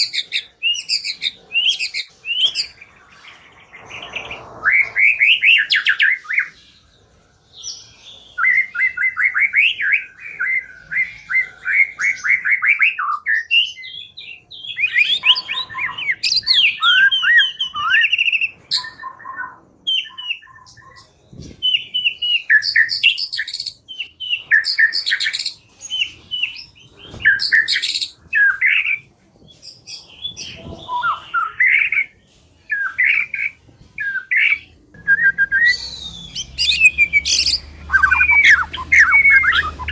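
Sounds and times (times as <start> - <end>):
bird singing trills and whistles: 0.0 - 6.9, 7.5 - 39.9.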